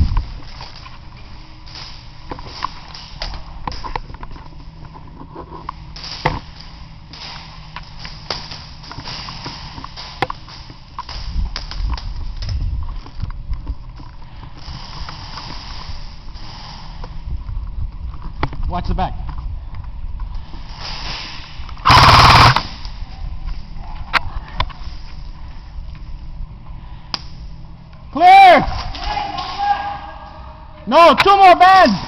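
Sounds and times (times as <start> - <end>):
low rumbling movement noise: 0.0 - 29.0
airsoft shots and clicks: 21.8 - 22.7.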